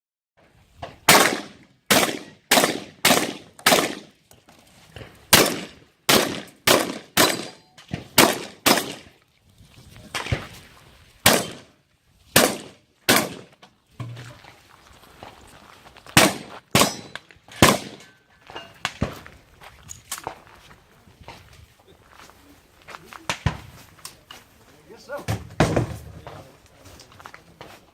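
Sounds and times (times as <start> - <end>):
shotgun shots: 1.0 - 4.2, 5.3 - 9.1, 11.2 - 11.7, 12.4 - 13.5, 16.2 - 18.0.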